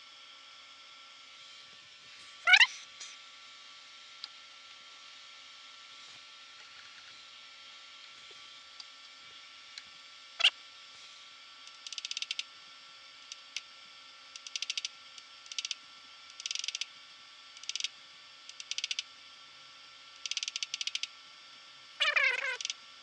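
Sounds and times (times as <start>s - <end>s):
faint machine hum: 0.0s - 23.0s
rapid mechanical clicking: 11.6s - 12.5s, 14.3s - 16.9s, 17.6s - 17.9s, 18.5s - 19.1s, 20.2s - 21.1s, 22.6s - 22.8s.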